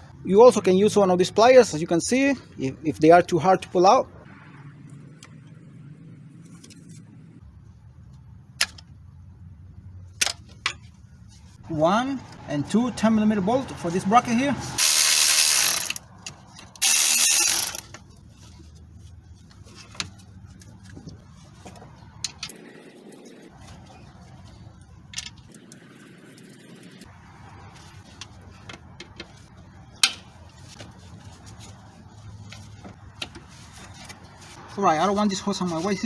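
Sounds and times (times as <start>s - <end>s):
hand tools clicking on metal: 14.8s - 16.0s, 16.8s - 17.8s.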